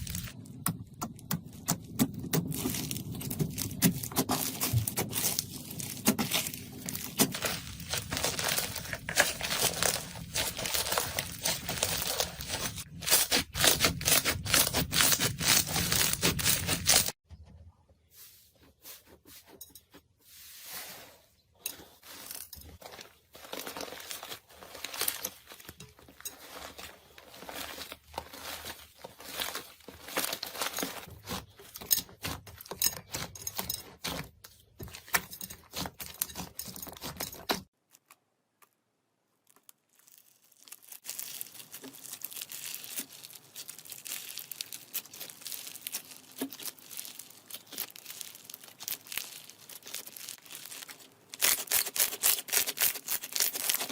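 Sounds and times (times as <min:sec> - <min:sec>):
slime crackling and popping: 0:00.0 - 0:17.2, 0:39.3 - 0:53.9.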